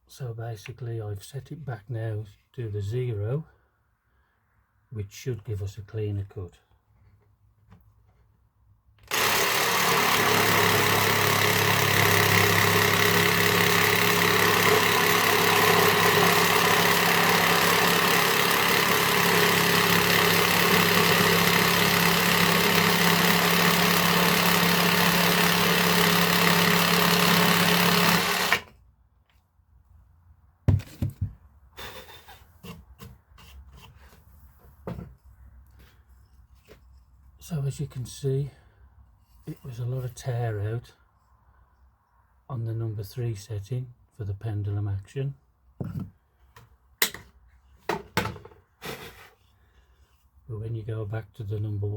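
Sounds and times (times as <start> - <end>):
jigsaw sawing through wood: 9.0 - 28.7
sharp knocks of wood set down: 30.6 - 31.4, 34.6 - 35.2, 45.8 - 48.6.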